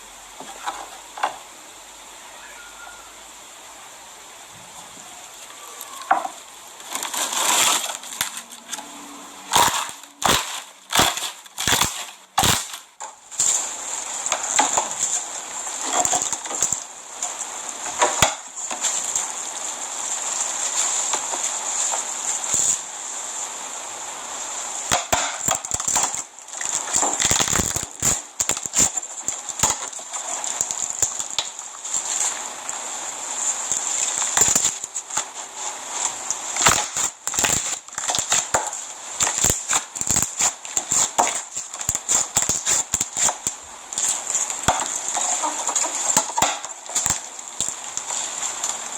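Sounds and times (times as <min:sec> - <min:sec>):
slime squeezed with popping crackles: 0:09.4 - 0:13.6, 0:24.8 - 0:32.3, 0:36.6 - 0:48.4.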